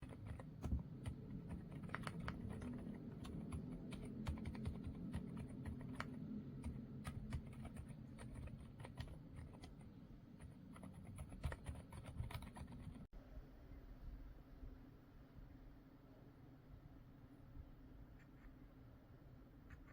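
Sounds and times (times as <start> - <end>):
mechanical keyboard typing: 0.0 - 13.1.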